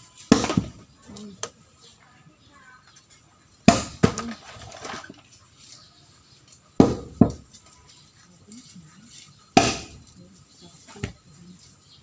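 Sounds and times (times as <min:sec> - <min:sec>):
axe chopping firewood: 0:00.3 - 0:00.8, 0:03.6 - 0:05.0, 0:06.8 - 0:07.5, 0:09.5 - 0:10.0.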